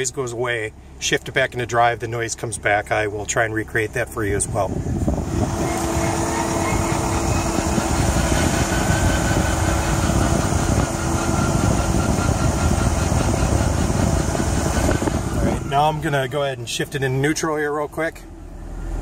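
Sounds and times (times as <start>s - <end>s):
road and wind rumble: 0.0s - 19.0s
steady wheel whine: 4.1s - 19.0s.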